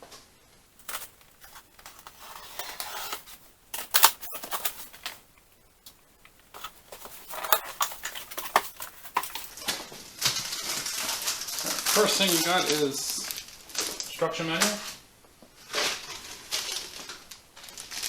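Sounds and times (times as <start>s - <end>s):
packing rustling: 0.7s - 14.9s, 15.6s - 18.0s
knife cutting cardboard box: 0.8s - 5.1s, 6.5s - 9.5s.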